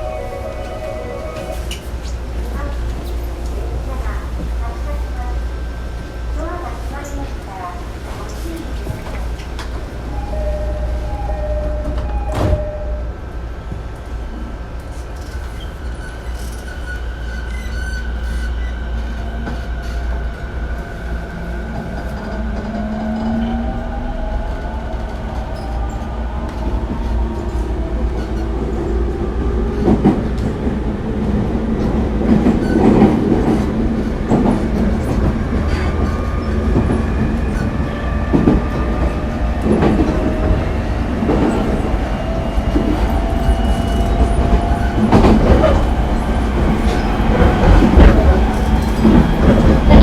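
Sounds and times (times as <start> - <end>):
wheels rumbling on rail: 0.0 - 50.0.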